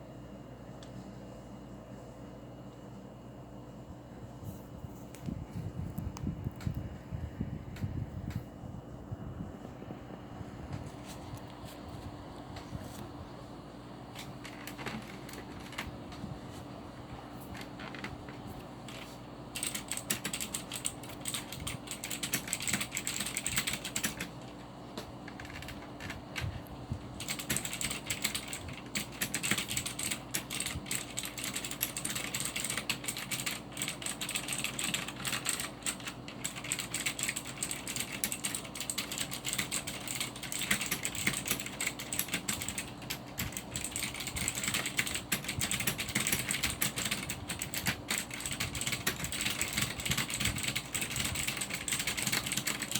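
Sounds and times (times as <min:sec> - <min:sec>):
mechanical keyboard typing: 0:14.1 - 0:16.0, 0:17.4 - 0:26.6, 0:27.2 - 0:52.9.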